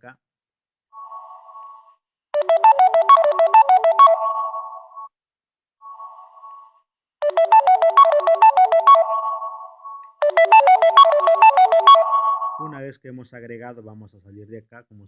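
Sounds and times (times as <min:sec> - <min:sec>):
phone notification tone: 0:02.4 - 0:05.0, 0:07.2 - 0:12.8.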